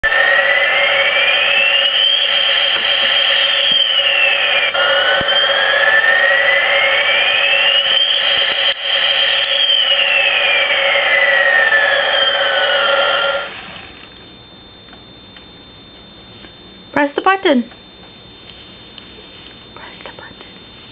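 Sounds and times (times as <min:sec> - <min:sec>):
toy synthetic whine: 0:00.0 - 0:14.1
steady hum: 0:00.0 - 0:20.9.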